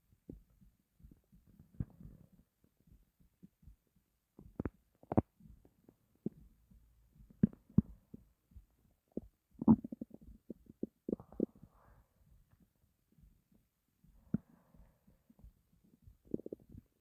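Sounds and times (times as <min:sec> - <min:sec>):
stomach growling: 0:04.4 - 0:06.4, 0:09.1 - 0:12.0, 0:14.2 - 0:17.0.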